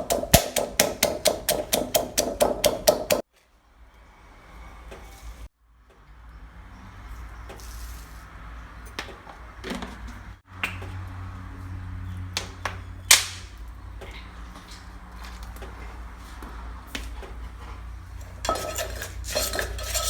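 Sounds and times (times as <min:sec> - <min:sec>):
kitchen knocks and clicks: 0:00.0 - 0:03.2.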